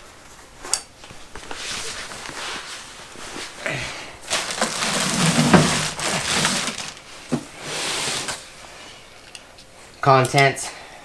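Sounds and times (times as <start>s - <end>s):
cardboard crushing and crackling: 3.4s - 8.4s.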